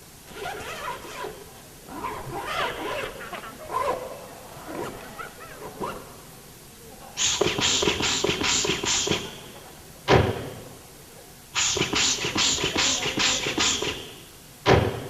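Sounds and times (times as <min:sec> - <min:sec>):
quick rhythmic bursts: 0:07.1 - 0:15.0
heavy thud: 0:10.1 - 0:10.8, 0:14.6 - 0:15.0.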